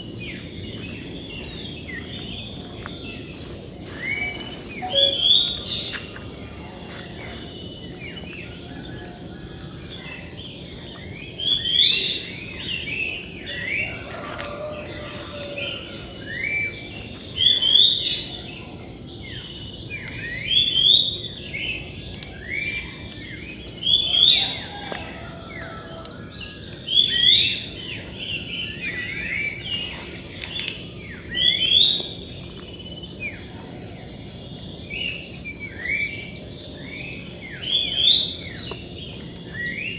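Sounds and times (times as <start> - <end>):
high-pitched insect drone: 0.0 - 8.9, 27.0 - 32.3
birds chirping: 0.1 - 8.3.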